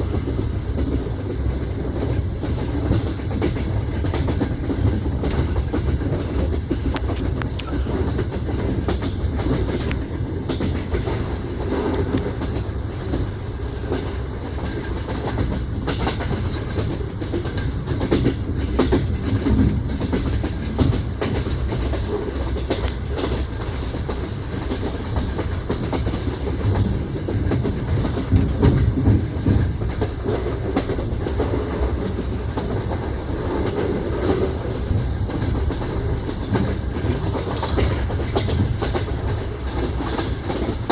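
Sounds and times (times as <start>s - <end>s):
train wheels clickety-clack: 0.0s - 40.9s.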